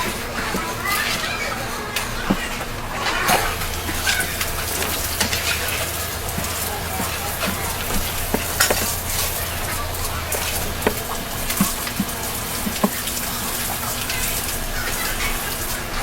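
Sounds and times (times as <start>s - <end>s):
small knocks: 0.0s - 14.6s
running water splashing: 0.0s - 16.0s.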